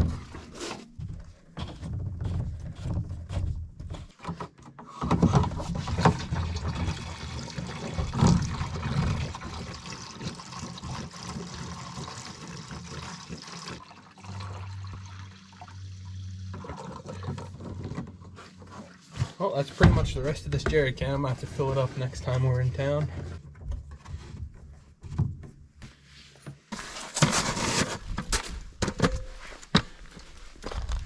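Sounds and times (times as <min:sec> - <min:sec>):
liquid pouring into a tank: 0:05.3 - 0:18.0.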